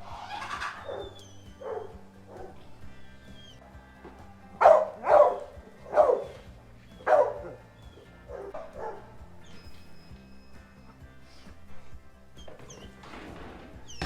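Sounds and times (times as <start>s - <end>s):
dog barking: 0.5s - 2.7s, 4.5s - 9.2s.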